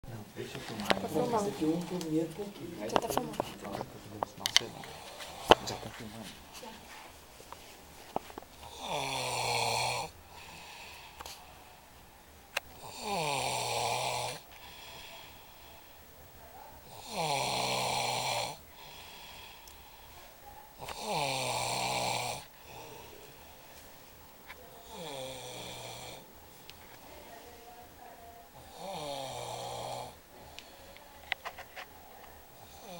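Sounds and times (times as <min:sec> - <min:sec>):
quiet breathing: 0:02.9 - 0:32.9
man snoring heavily: 0:04.6 - 0:05.9, 0:08.6 - 0:11.2, 0:12.8 - 0:15.8, 0:16.9 - 0:20.0, 0:20.8 - 0:23.2, 0:24.8 - 0:26.3, 0:28.6 - 0:30.2, 0:32.6 - 0:32.9.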